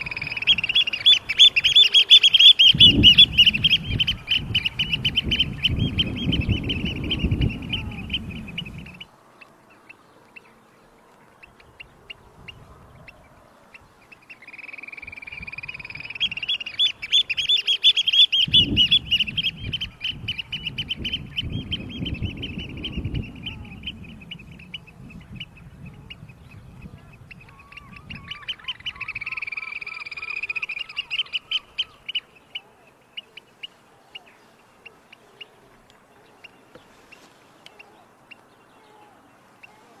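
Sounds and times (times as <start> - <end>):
lower quickly repeated bird notes: 0.0 - 9.1, 13.8 - 35.7
birds chirping: 0.0 - 40.0.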